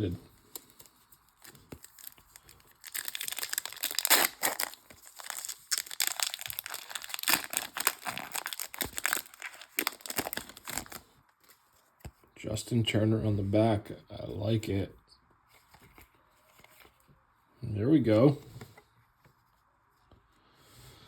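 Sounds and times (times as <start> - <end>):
foil wrapper crinkling and tearing: 0.4 - 11.6.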